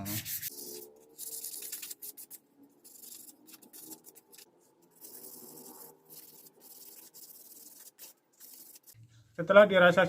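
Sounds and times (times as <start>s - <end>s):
sandpaper rubbing on wood: 0.0s - 9.0s.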